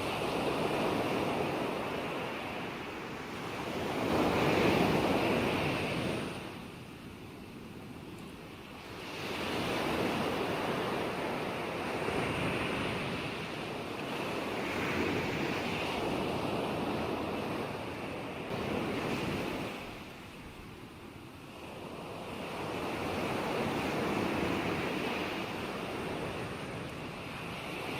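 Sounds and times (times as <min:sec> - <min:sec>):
ocean waves washing in: 0:08.5 - 0:27.9.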